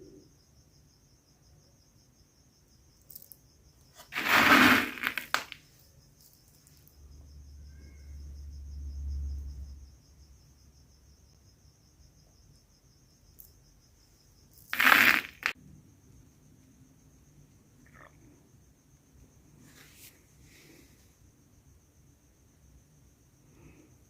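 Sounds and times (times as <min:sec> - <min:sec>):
cricket trilling: 0:00.0 - 0:24.0
short bursts of noise: 0:04.0 - 0:05.6, 0:14.7 - 0:15.6.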